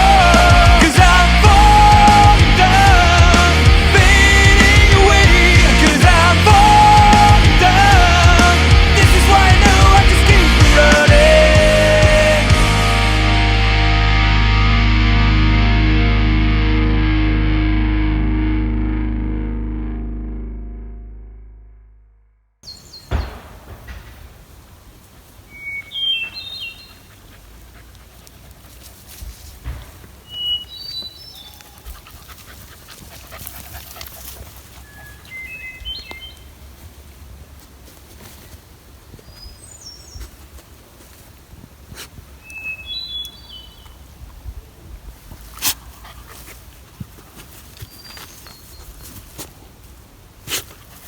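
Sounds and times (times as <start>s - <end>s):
song with guitar: 0.0s - 21.8s
outdoor nature ambience: 22.6s - 51.0s
thump: 23.1s - 24.4s, 29.6s - 30.1s
short high bird chirps: 25.5s - 27.0s, 30.3s - 31.6s, 42.4s - 43.9s
bird call notes: 25.5s - 27.1s, 30.2s - 31.8s, 42.4s - 44.0s.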